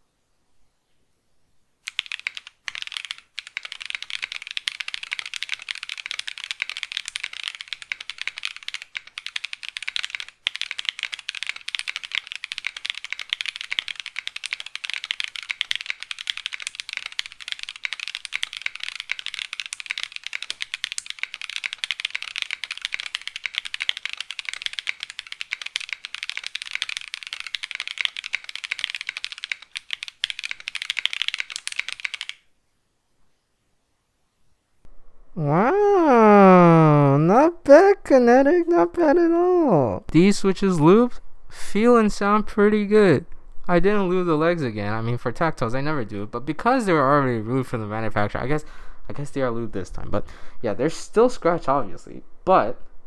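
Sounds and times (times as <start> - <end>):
typing on mechanical keyboard: 1.8 - 32.4.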